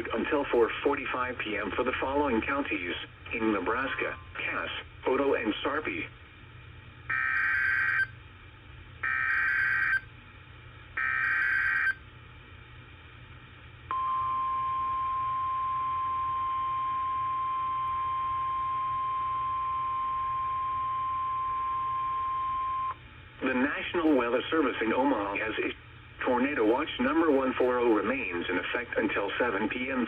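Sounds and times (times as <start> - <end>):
steady warning alarm tone: 7.1 - 8.2, 9.0 - 10.1, 11.0 - 12.0, 13.9 - 23.0.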